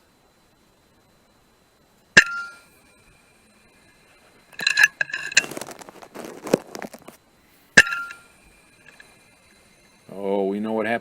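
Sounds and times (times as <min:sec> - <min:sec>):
metallic clicks and rattling: 0:04.6 - 0:05.8.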